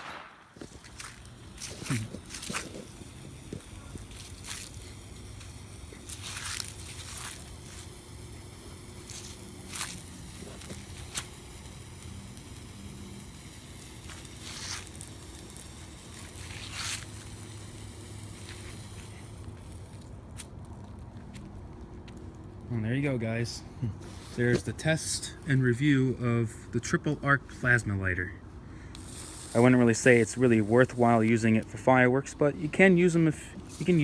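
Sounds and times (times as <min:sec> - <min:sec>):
sparkler fizzing and crackling: 0:00.0 - 0:21.1, 0:28.9 - 0:34.0.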